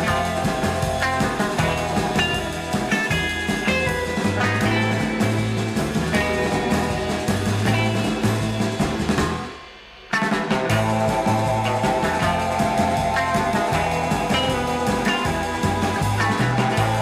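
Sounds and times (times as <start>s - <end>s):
rock music: 0.0s - 17.0s.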